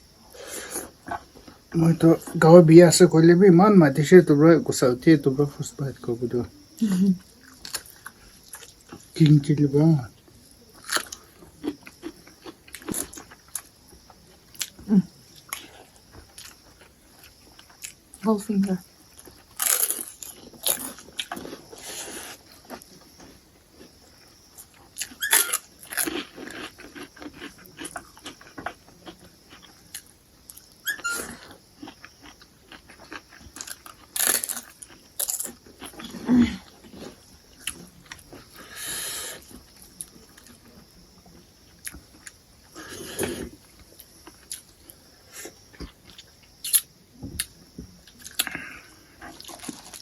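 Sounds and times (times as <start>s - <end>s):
crab being chewed crunching: 10.3s - 18.1s, 19.1s - 38.6s, 43.5s - 50.0s.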